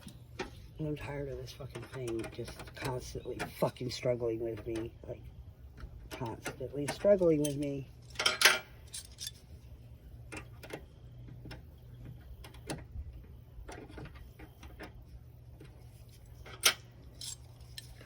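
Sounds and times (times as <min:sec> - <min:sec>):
low steady hum: 0:00.0 - 0:18.0
metal tools clicking: 0:07.2 - 0:09.4, 0:16.6 - 0:18.0.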